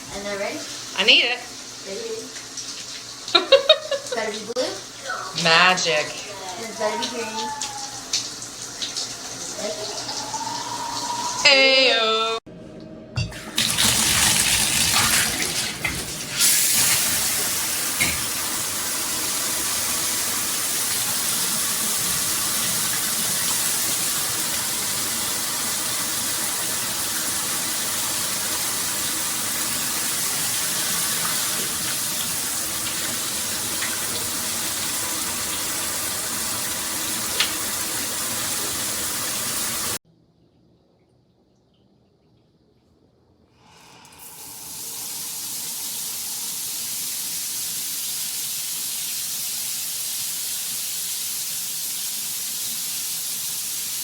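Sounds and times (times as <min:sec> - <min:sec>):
shower head spraying water: 0:13.4 - 0:40.0.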